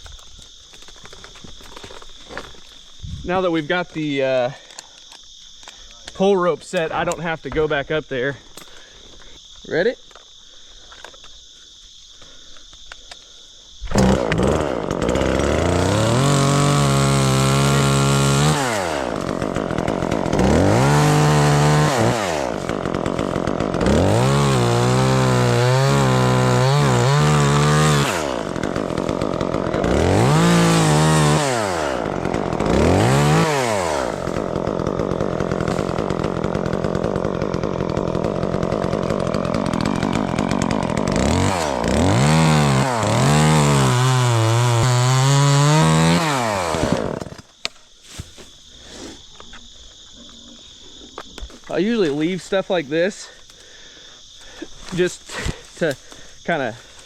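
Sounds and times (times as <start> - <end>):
crickets chirping: 0.0 - 14.0, 18.6 - 57.0
chainsaw revving: 13.9 - 47.5.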